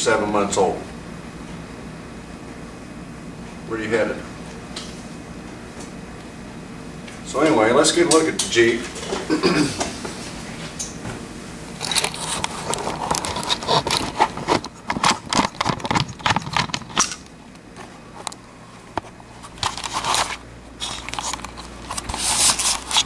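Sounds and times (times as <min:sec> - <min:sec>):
irregular scraping and clicking: 0:11.8 - 0:17.3, 0:18.2 - 0:23.0.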